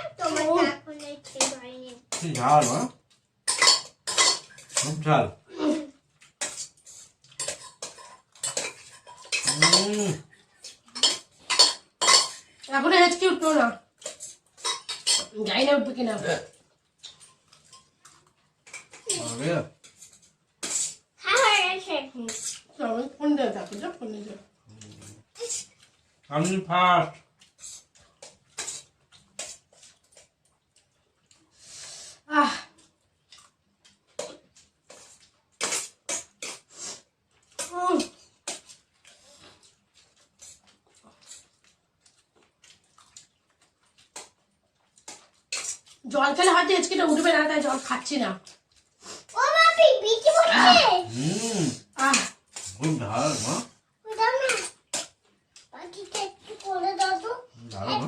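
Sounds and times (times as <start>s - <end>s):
plates and utensils clinking: 3.5s - 5.2s, 6.4s - 12.5s, 13.1s - 15.5s
person making drawn-out voiced sound: 50.2s - 51.8s
short vocal sound falling in pitch: 51.0s - 51.8s.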